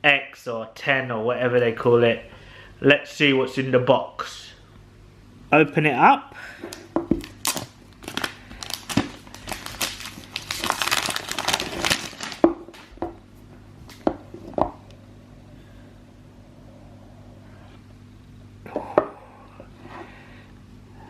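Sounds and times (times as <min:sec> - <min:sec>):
plastic wrap tearing and crinkling: 0:06.7 - 0:13.0
low hum: 0:13.1 - 0:21.0.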